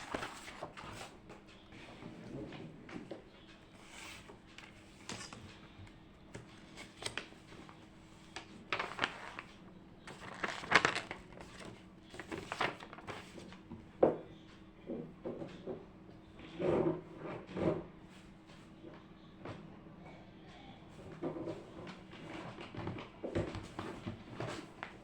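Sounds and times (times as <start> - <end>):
objects and paper rustling: 0.0 - 5.6, 6.3 - 13.7, 21.1 - 25.0.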